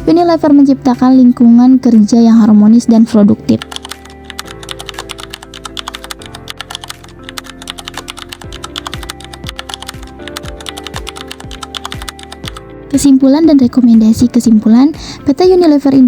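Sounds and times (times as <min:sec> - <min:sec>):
background music with held tones: 0:00.0 - 0:16.0
low thumping beat: 0:08.0 - 0:14.3.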